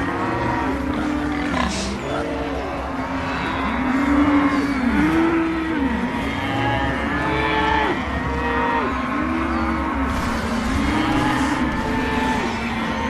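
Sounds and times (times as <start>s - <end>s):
stomach growling: 0.0s - 13.0s.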